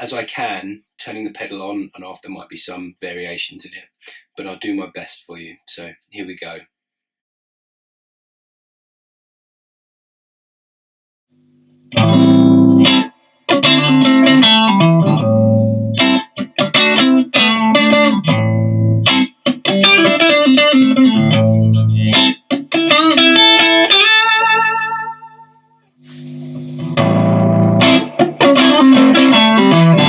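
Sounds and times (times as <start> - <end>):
overdriven electric guitar riff: 11.4 - 30.0.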